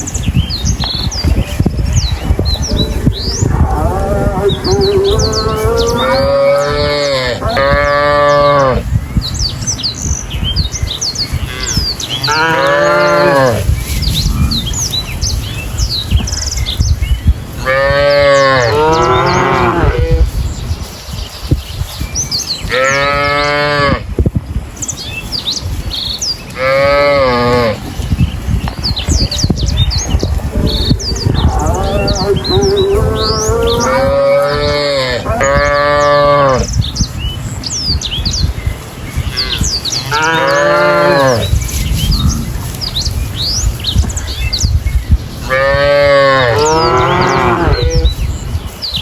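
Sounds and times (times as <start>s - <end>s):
small birds chirping: 0.0s - 49.0s
cows mooing: 2.7s - 8.8s, 11.4s - 14.8s, 17.6s - 20.3s, 22.7s - 24.0s, 26.6s - 27.8s, 30.5s - 36.7s, 39.2s - 42.7s, 45.4s - 48.2s.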